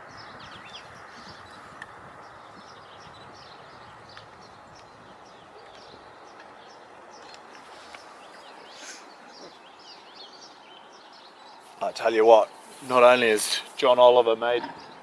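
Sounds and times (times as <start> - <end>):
birds chirping: 0.0 - 15.0
lakeside background hiss: 0.0 - 15.0.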